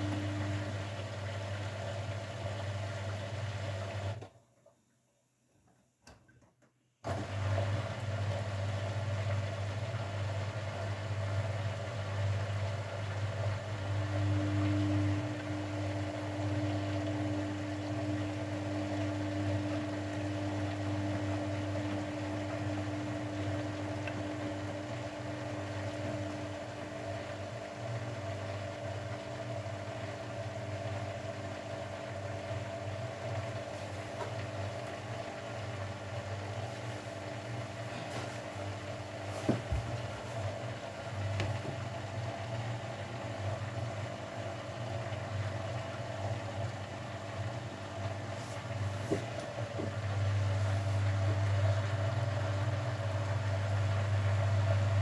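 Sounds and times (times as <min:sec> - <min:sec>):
high steady whine: 0:00.0 - 0:01.3, 0:13.6 - 0:28.5
washing machine humming: 0:00.0 - 0:55.0.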